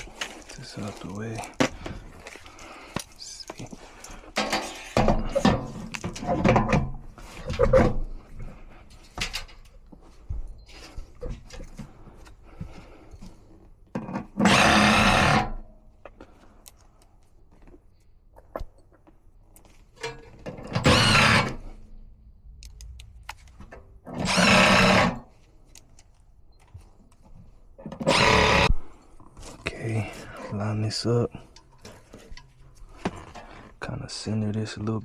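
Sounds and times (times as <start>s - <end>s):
cordless drill running: 14.4s - 15.5s, 20.8s - 21.6s, 24.2s - 25.2s, 28.0s - 28.8s.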